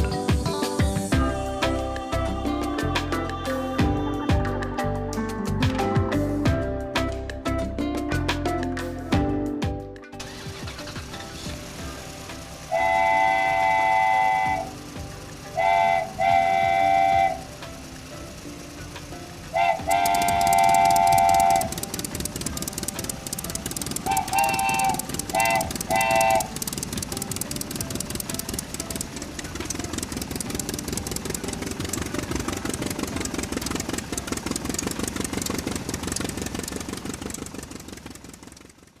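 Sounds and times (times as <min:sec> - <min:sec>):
train clattering: 0:10.2 - 0:38.6
train horn blasts: 0:12.7 - 0:17.6, 0:19.5 - 0:21.8, 0:24.0 - 0:26.6.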